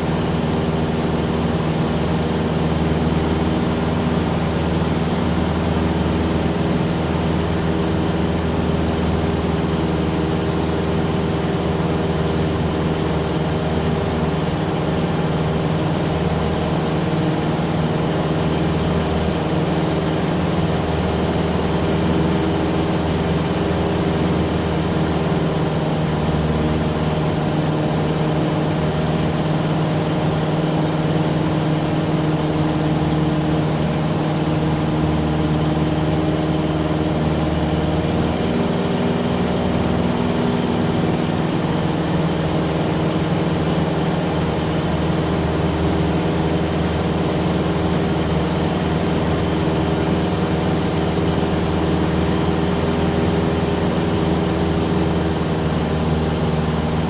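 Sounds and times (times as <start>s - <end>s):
propeller plane engine droning: 0.0s - 57.0s.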